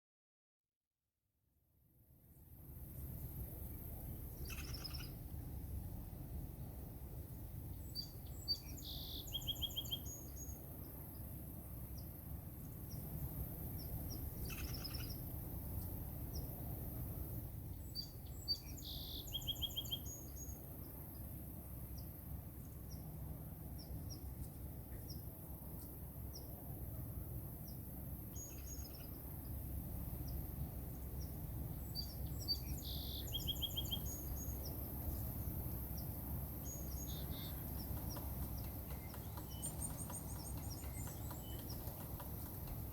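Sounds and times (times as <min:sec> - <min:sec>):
low background rumble: 0:01.9 - 0:42.9
woodpecker calling: 0:04.4 - 0:05.2, 0:08.0 - 0:10.6, 0:14.1 - 0:15.3, 0:32.0 - 0:34.8, 0:36.6 - 0:42.9.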